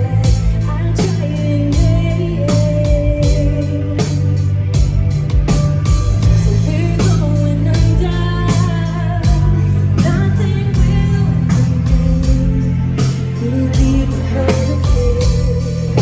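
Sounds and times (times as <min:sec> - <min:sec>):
person singing: 0:00.0 - 0:05.4, 0:06.2 - 0:16.0
distorted guitars: 0:00.0 - 0:16.0
heavy bass: 0:00.0 - 0:16.0
drum hits: 0:04.8 - 0:16.0.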